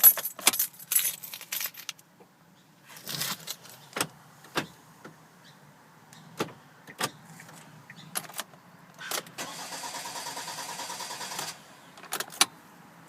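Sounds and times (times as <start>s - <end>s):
car keys jangling: 0.0s - 2.0s, 2.9s - 4.0s.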